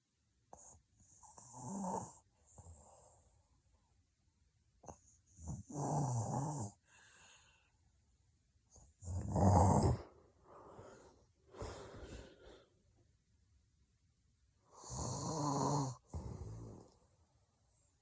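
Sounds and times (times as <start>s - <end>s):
woman snoring heavily: 1.4s - 2.2s, 5.5s - 6.7s, 9.1s - 10.1s, 14.8s - 16.9s
soft breathing: 6.8s - 8.0s, 9.9s - 13.0s.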